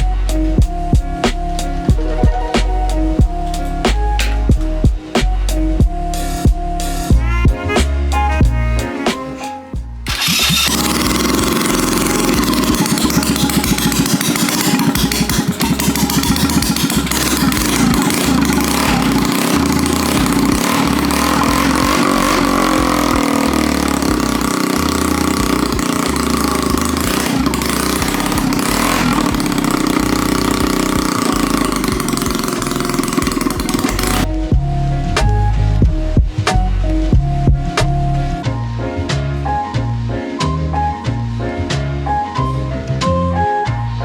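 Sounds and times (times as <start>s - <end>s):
small kart engine revving: 9.0s - 35.9s.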